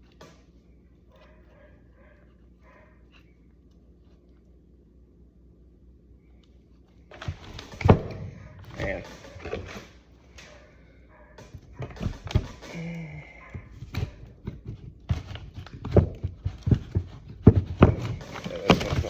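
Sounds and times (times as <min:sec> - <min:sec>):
metal knocks and clicks: 0:11.4 - 0:12.8, 0:13.4 - 0:19.0.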